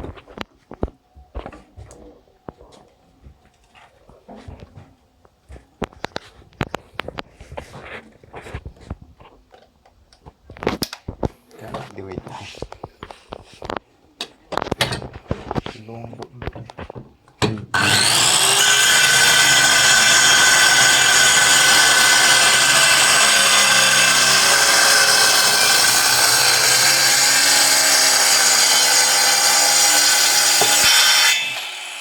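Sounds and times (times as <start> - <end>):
circular saw whining: 17.7 - 32.0.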